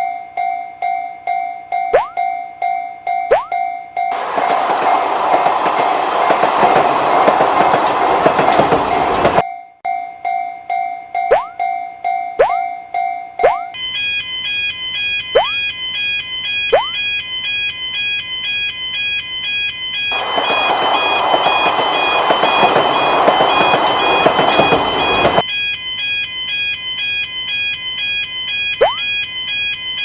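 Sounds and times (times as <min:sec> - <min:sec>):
electronic two-tone alarm: 0:00.0 - 0:04.2, 0:09.4 - 0:30.0
springy boing effects: 0:13.4 - 0:13.8.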